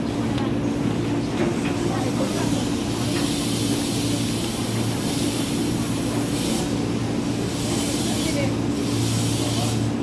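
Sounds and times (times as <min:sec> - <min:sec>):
electric train running: 0:00.6 - 0:10.0.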